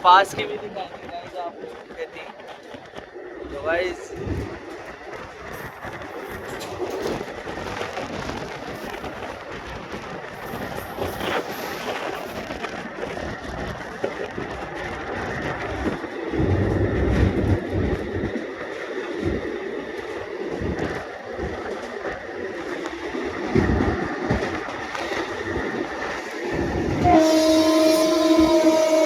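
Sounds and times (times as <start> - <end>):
train wheels clattering: 4.2 - 29.0
train horn blast: 27.0 - 29.0.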